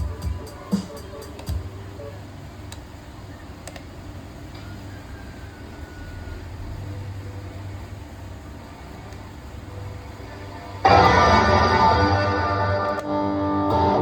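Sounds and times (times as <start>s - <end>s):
guitar rig hum: 10.8s - 14.0s.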